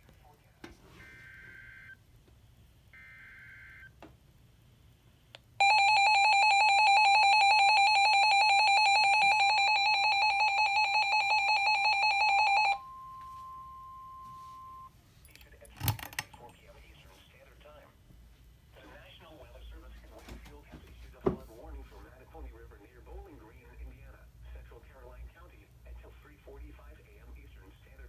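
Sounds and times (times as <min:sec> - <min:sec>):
pulsing electronic alarm tone: 0:05.6 - 0:14.9
steady single tone: 0:12.8 - 0:14.9.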